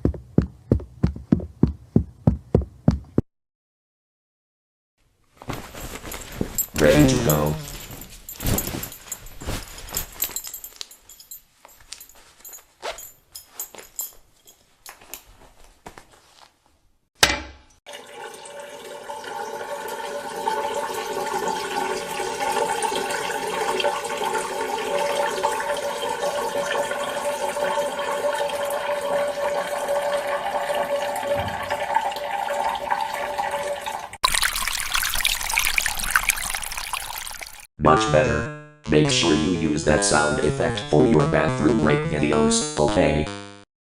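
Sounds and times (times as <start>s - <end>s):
knocks and handling sounds: 5.3s - 17.8s
water running into toilet: 17.9s - 37.7s.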